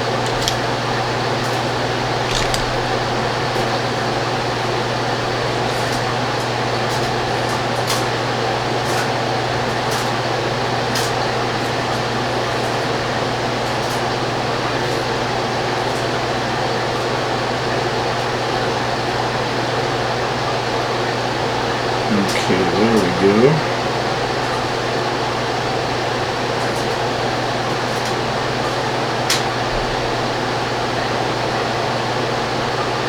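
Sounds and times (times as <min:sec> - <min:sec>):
electric fan whirring: 0:00.0 - 0:11.3.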